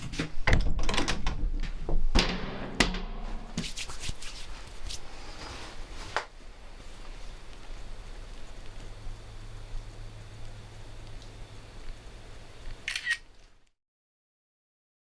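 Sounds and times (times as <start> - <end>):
toilet door knocks and clicks: 0.1 - 3.6.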